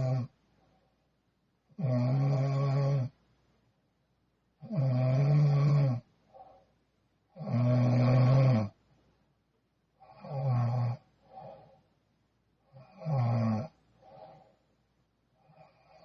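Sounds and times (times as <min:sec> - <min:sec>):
woman snoring: 0:00.0 - 0:00.3, 0:01.8 - 0:03.2, 0:04.6 - 0:06.1, 0:07.4 - 0:08.8, 0:10.0 - 0:11.1, 0:12.7 - 0:13.8.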